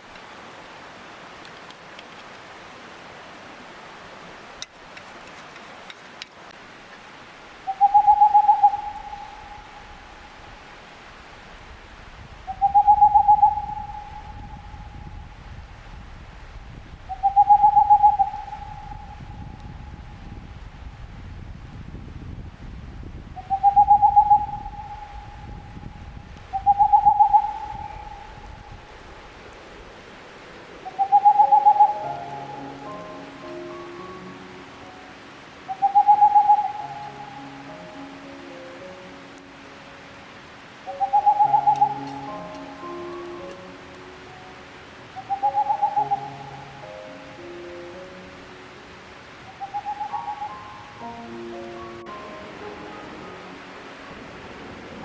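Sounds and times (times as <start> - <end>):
mountain stream rushing: 0.0 - 55.0
owl hooting: 7.6 - 10.4, 12.5 - 15.2, 17.1 - 20.1, 23.4 - 28.9, 30.8 - 35.0, 35.6 - 37.7, 40.8 - 43.4, 45.1 - 47.4, 49.5 - 51.0.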